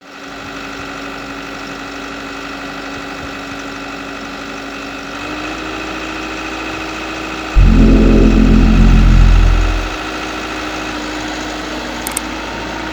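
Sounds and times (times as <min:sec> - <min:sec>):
excavator engine running: 0:07.6 - 0:10.0.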